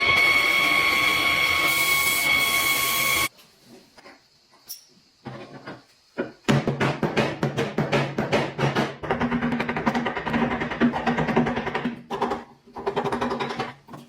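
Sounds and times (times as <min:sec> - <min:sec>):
power tool whining: 0:00.0 - 0:03.3.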